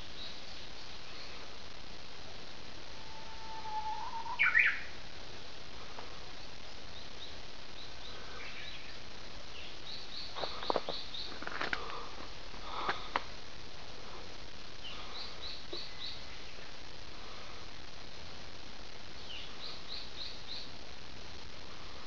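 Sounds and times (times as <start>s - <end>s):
bush warbler song: 0.0s - 1.7s, 3.1s - 12.2s, 14.7s - 16.8s, 19.0s - 20.9s
background hiss: 0.0s - 22.0s
quick bird calls: 3.6s - 4.9s.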